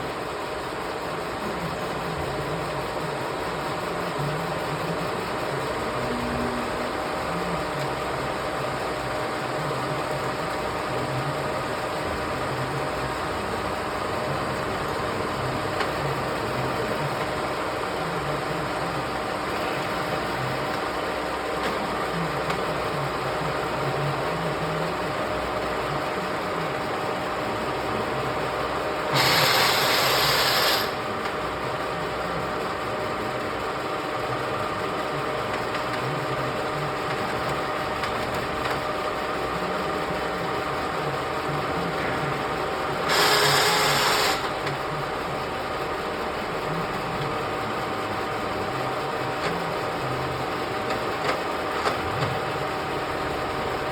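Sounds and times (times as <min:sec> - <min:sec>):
milling machine running: 0:00.0 - 0:53.9
loud burst of machine noise: 0:29.0 - 0:31.1, 0:43.0 - 0:44.6.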